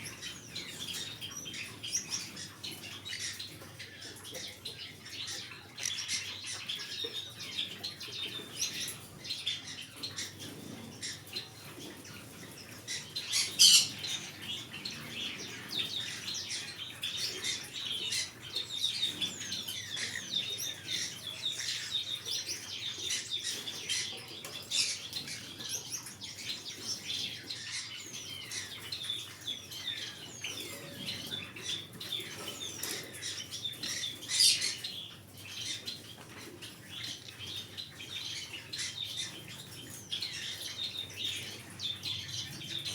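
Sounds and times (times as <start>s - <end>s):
parrots chirping: 5.0s - 7.6s, 12.3s - 24.1s.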